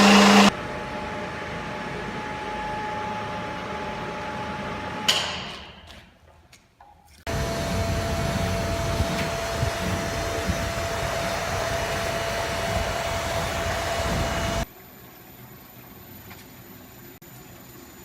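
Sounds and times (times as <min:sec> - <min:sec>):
machinery rumbling with whine: 0:07.3 - 0:14.7.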